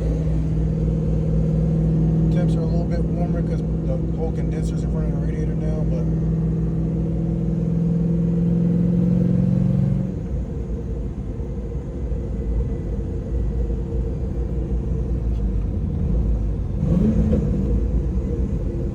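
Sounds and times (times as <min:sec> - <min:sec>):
steady hum: 0:00.0 - 0:08.5
car engine idling: 0:00.0 - 0:18.9.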